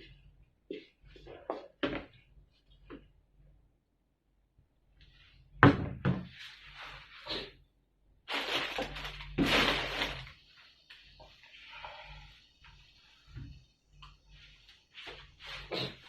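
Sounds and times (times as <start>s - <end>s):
rustling noise: 6.3s - 7.3s, 8.3s - 16.0s.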